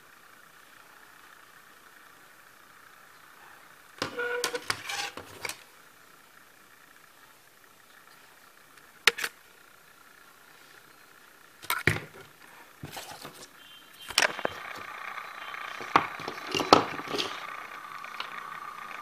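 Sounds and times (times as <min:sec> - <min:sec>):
small motor whirring with high whine: 0:00.0 - 0:19.0
handling clicks and knocks: 0:15.7 - 0:17.5.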